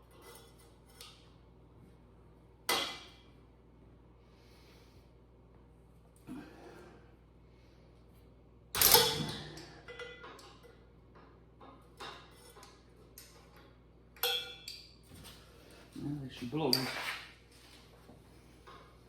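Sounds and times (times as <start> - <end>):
metal tools clanking: 8.8 - 14.9.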